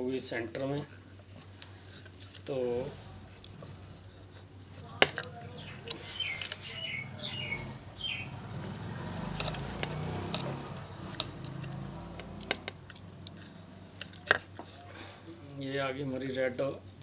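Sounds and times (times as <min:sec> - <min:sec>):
wires clicking: 0:03.2 - 0:14.7.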